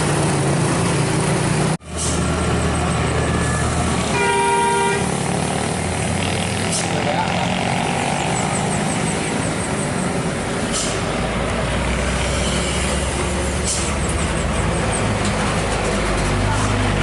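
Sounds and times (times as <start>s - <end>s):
diesel engine running: 0.0s - 17.0s
air hissing: 10.6s - 11.3s.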